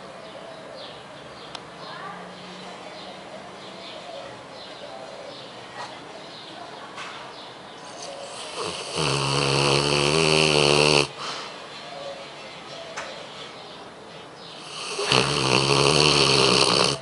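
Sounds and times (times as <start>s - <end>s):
dog snoring: 7.9s - 11.2s, 14.6s - 17.0s.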